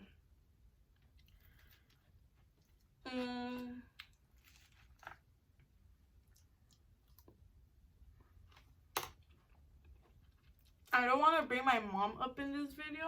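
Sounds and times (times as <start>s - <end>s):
soft chewing clicks: 6.2s - 7.5s.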